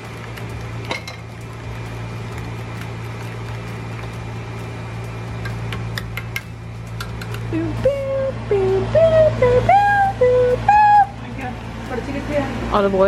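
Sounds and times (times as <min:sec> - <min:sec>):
utensils clicking: 0:00.0 - 0:08.1
kitchen appliance motor humming: 0:00.0 - 0:13.0.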